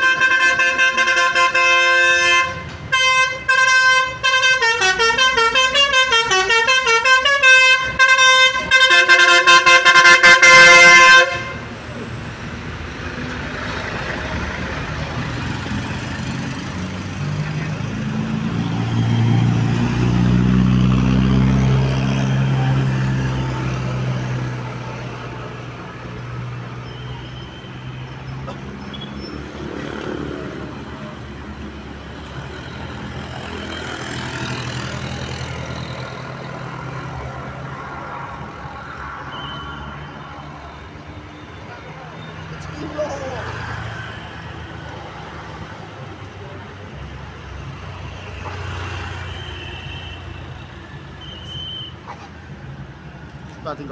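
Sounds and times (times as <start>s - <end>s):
background traffic: 0.0s - 53.9s
heavy vehicle engine passing: 4.1s - 26.4s.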